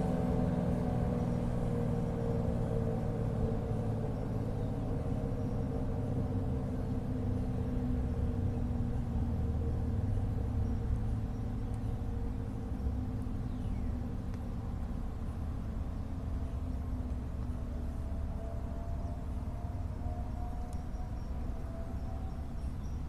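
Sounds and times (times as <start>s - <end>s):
low dual-tone warning siren: 16.2s - 23.0s.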